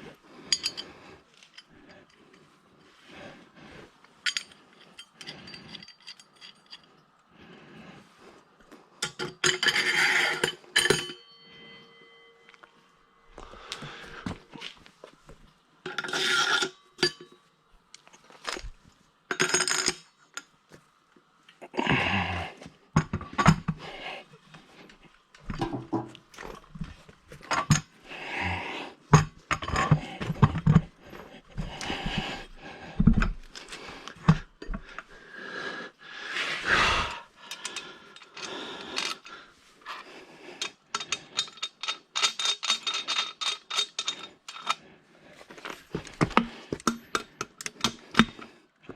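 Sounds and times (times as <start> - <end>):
metal tools clinking and scraping: 0.4 - 3.0, 4.0 - 7.2, 9.0 - 14.9, 15.9 - 20.5, 24.7 - 35.2, 36.9 - 48.5.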